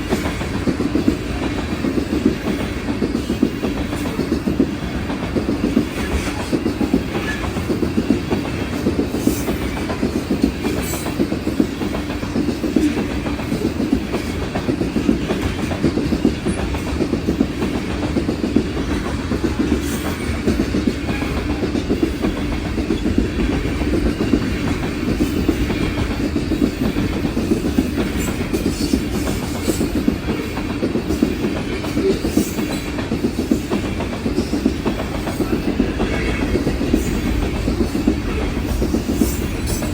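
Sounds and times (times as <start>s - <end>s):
low train rumble: 0.0s - 39.9s
train wheels clattering: 0.0s - 39.9s.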